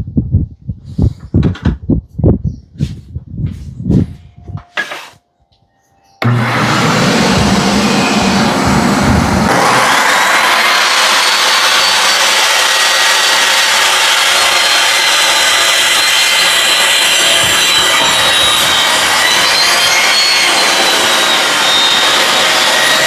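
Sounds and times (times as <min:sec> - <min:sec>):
table saw ripping wood: 0:06.2 - 0:23.0.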